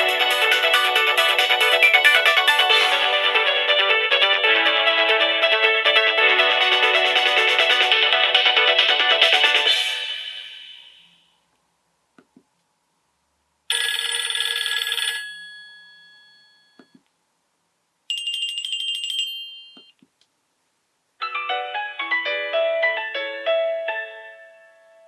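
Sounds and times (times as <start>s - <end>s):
phone ringtone tune: 0.0s - 10.9s.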